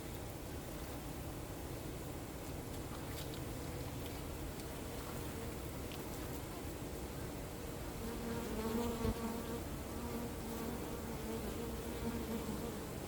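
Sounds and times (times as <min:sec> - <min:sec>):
background hiss: 0:00.0 - 0:13.0
bee buzzing: 0:08.0 - 0:13.0.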